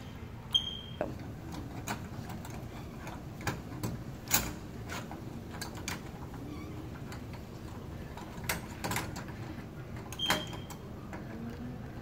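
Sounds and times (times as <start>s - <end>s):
metal lock parts clicking and knocking: 1.5s - 6.3s, 8.2s - 9.4s.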